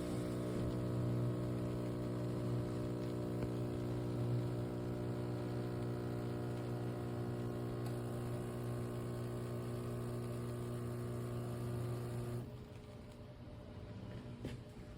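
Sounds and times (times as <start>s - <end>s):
espresso machine pump buzzing: 0.0s - 12.5s.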